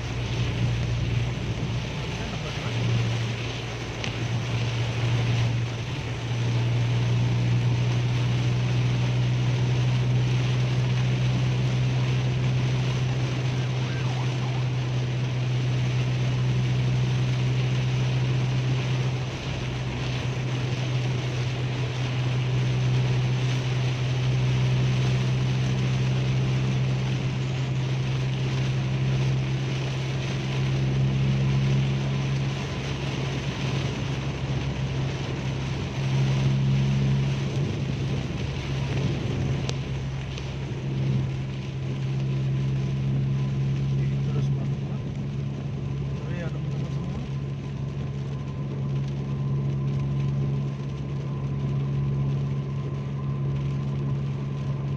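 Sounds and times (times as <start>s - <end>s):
engine and road drone: 0.0s - 54.9s
rain and tyre spray hiss: 0.0s - 54.9s.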